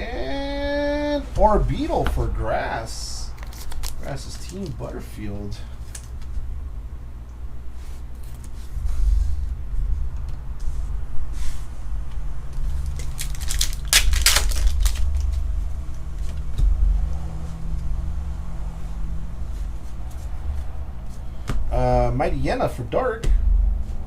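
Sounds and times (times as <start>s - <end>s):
handling noise rumble: 0.0s - 22.5s
foil crinkling: 3.3s - 5.0s, 12.6s - 15.4s.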